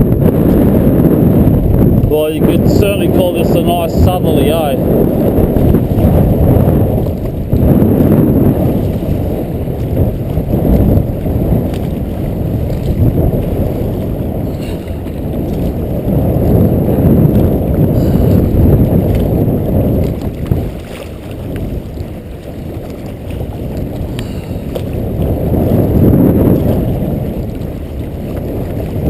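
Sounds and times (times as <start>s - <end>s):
wind buffeting microphone: 0.0s - 29.0s
faint water splashes: 11.7s - 16.6s, 20.0s - 25.4s.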